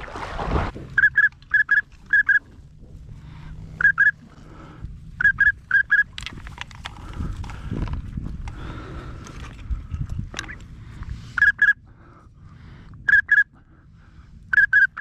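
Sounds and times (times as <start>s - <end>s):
duck whistle calling: 1.0s - 2.5s, 3.8s - 4.2s, 5.2s - 6.2s, 11.4s - 11.8s, 13.0s - 13.5s, 14.5s - 15.0s.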